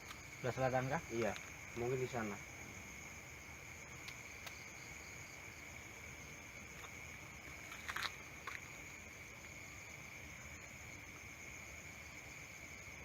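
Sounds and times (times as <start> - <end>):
crickets trilling: 0.0 - 13.0.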